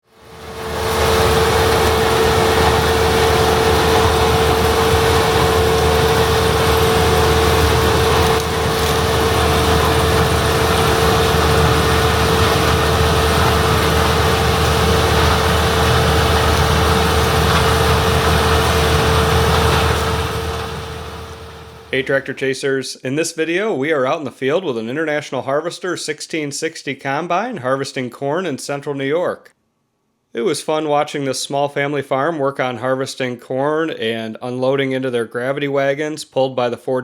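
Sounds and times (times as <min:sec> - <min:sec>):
diesel engine drone: 0:00.1 - 0:22.1
high whine: 0:00.1 - 0:22.4.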